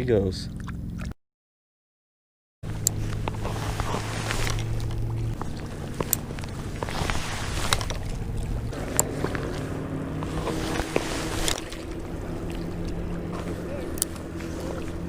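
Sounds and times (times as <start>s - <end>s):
motor humming: 2.6s - 15.0s.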